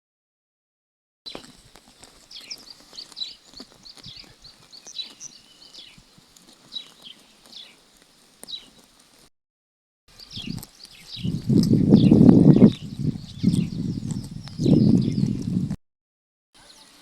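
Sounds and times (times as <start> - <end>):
sheep chewing grass: 1.3 - 9.2, 10.2 - 15.8
small birds chirping: 1.3 - 9.2, 10.1 - 15.8, 16.6 - 17.0.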